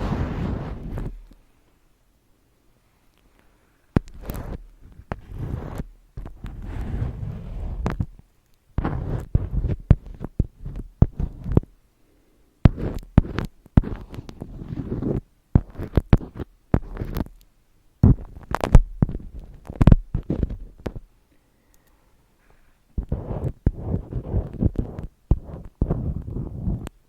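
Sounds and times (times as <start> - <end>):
rubbing sounds: 0.0 - 1.4, 4.0 - 8.2, 8.8 - 11.7, 12.7 - 17.4, 18.0 - 21.1, 23.0 - 27.0.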